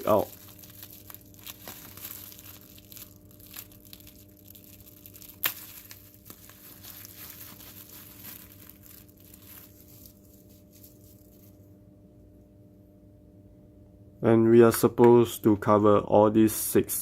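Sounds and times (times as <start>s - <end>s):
plastic packaging crinkling: 0.0s - 11.6s.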